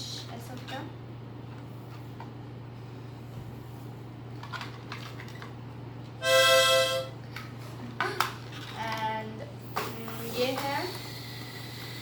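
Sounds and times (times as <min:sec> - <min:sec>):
low electrical hum: 0:00.0 - 0:12.0
toy flute note: 0:06.2 - 0:07.1.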